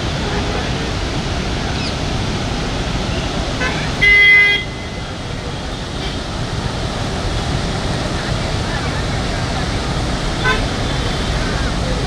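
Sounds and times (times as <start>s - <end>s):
steady rushing noise: 0.0s - 12.0s
vehicle horn honking: 3.6s - 5.3s, 10.4s - 11.3s.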